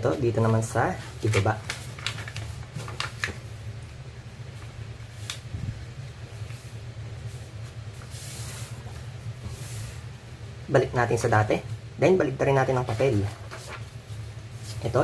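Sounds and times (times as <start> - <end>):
steady low hum: 0.0 - 15.0
paper rustling: 0.1 - 3.6, 12.6 - 15.0
paper sliding swish: 6.4 - 10.0.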